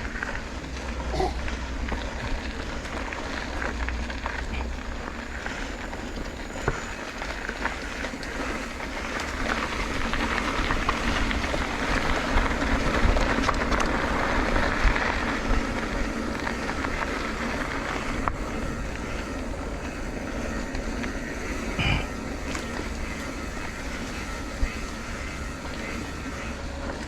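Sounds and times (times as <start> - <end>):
motorcycle engine running: 0.0 - 27.0.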